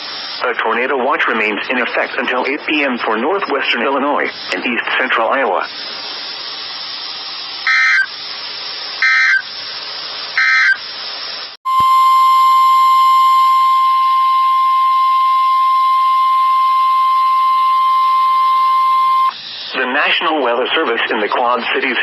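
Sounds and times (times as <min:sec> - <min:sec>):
radio hiss: 0:00.0 - 0:06.3, 0:19.3 - 0:22.0
buzzy digital alert bursts: 0:07.7 - 0:08.1, 0:09.0 - 0:09.4, 0:10.4 - 0:10.8
high-pitched warning alarm tone: 0:07.7 - 0:08.1, 0:09.0 - 0:09.5, 0:10.4 - 0:10.8, 0:11.7 - 0:19.4.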